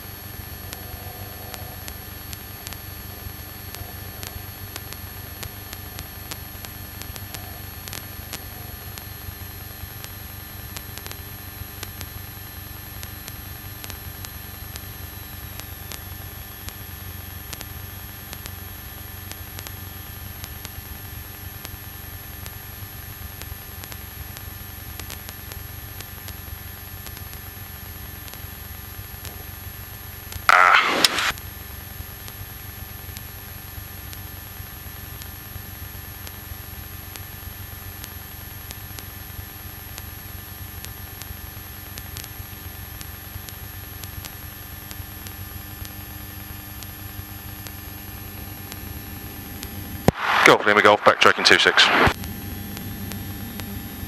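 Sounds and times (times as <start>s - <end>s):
aircraft engine drone: 0.0s - 9.7s, 49.3s - 54.0s
radio static hiss: 0.0s - 16.2s, 30.4s - 31.3s, 50.0s - 52.7s
electrical hum: 0.0s - 16.5s, 30.4s - 31.3s, 47.4s - 54.0s
faint high whine: 49.4s - 54.0s.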